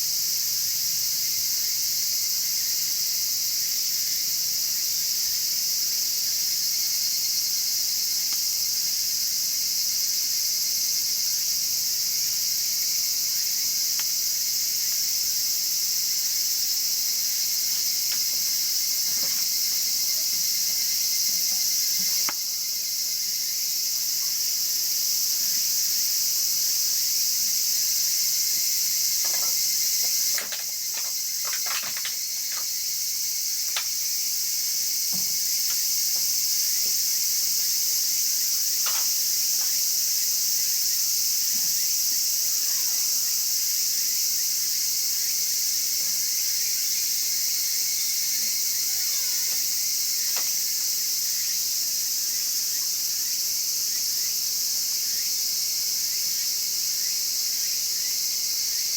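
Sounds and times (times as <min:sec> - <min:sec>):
crickets chirring: 0:00.0 - 0:58.9
wood fire crackling: 0:29.2 - 0:32.8.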